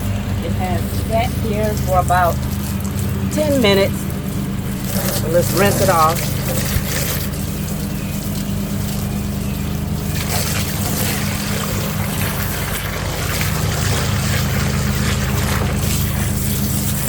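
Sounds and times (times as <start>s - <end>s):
low hum: 0.0s - 17.0s
water spraying onto grill grates: 0.0s - 17.0s.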